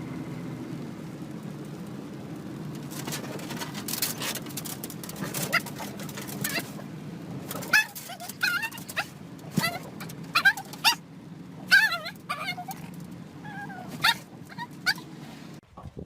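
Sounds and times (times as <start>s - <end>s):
dog whining: 5.2s - 6.8s, 7.6s - 11.0s, 11.6s - 15.1s.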